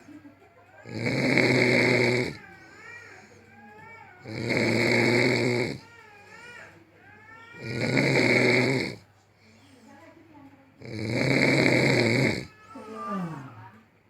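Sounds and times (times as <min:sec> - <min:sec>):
person snoring: 0:00.8 - 0:02.4, 0:04.2 - 0:05.8, 0:07.6 - 0:09.0, 0:10.8 - 0:13.5.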